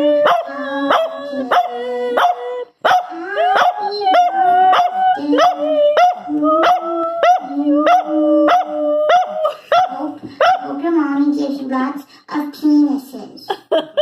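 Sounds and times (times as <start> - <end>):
dog howling: 0.0 - 9.9
dog barking: 0.2 - 10.8.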